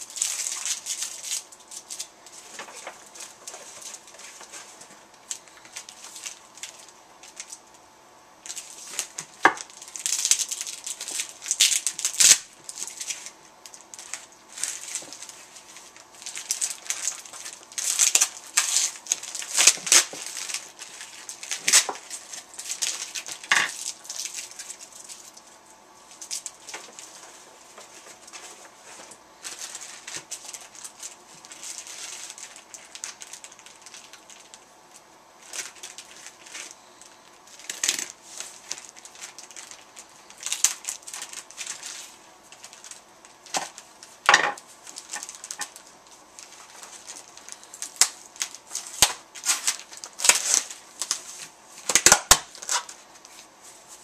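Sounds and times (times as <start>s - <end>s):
packaging crinkling and rustling: 0.0s - 7.8s, 8.4s - 54.0s
sharp crackles and clicks: 8.4s - 25.5s.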